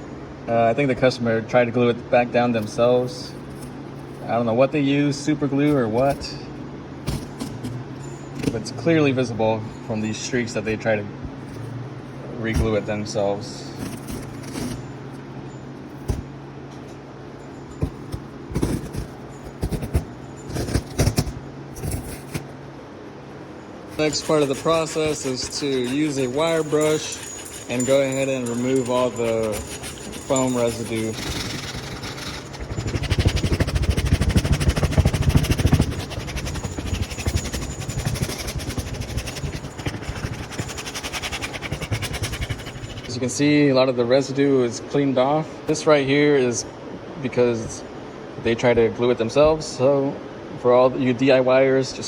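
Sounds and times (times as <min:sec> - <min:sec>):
scratching and rustling foam: 0:05.6 - 0:06.4, 0:07.1 - 0:08.7, 0:11.4 - 0:15.1, 0:17.8 - 0:22.6, 0:23.8 - 0:43.2
low hum: 0:10.6 - 0:24.0
wire brush scrubbing: 0:12.4 - 0:14.9, 0:17.8 - 0:22.5, 0:23.9 - 0:43.1.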